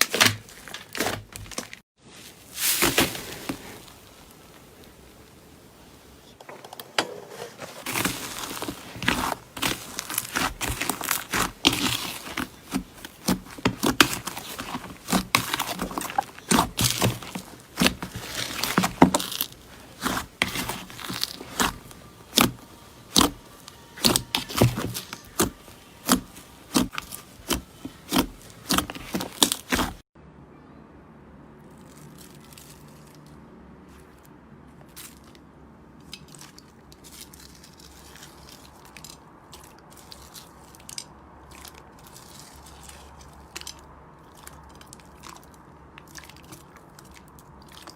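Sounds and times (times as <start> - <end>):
slime crackling and popping: 7.9 - 30.0.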